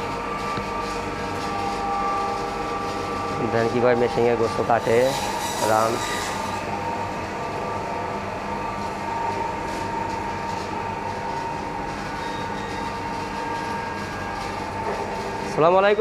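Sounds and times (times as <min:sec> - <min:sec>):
band saw cutting meat: 0:00.3 - 0:06.8.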